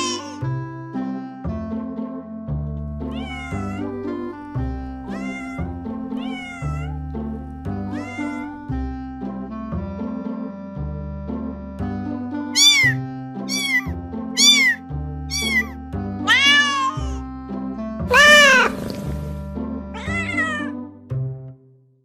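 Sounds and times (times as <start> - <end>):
cat meowing: 0.0 - 0.4, 3.1 - 7.1, 7.7 - 8.7, 12.6 - 17.2, 18.1 - 19.0, 20.0 - 20.8
background music: 0.0 - 21.8.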